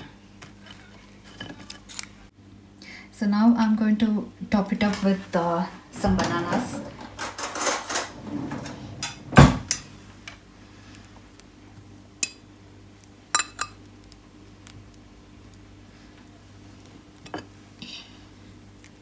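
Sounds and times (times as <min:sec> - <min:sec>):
dishes clinking: 0:04.9 - 0:10.0
cutlery scrape: 0:06.2 - 0:09.9.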